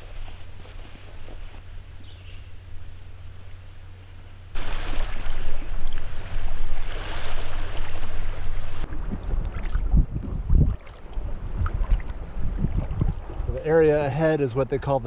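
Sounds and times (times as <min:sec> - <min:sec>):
water splashing around kayak: 0:00.0 - 0:13.5
wind on microphone: 0:04.5 - 0:13.6.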